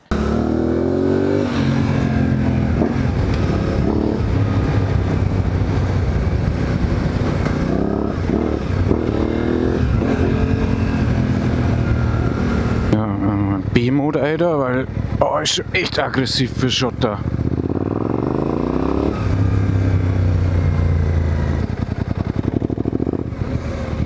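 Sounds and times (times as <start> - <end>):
motorcycle engine accelerating: 0.0 - 24.0
riding noise: 13.7 - 17.3.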